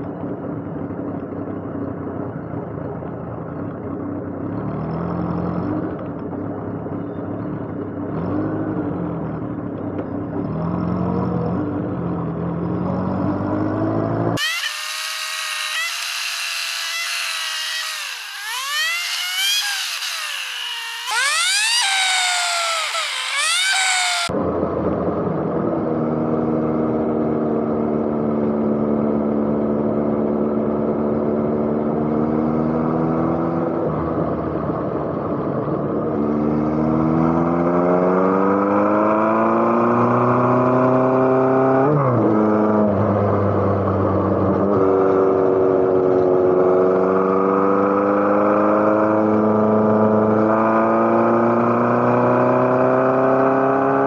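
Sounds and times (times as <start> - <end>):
motorcycle engine accelerating: 7.6 - 24.4, 25.1 - 54.0
high rising whine: 14.4 - 24.3.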